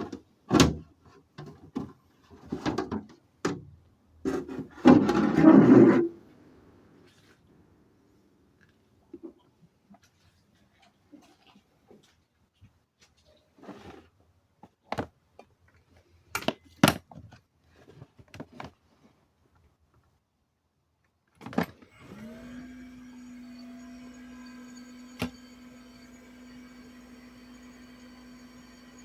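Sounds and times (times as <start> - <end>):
pump motor humming: 21.9 - 29.0.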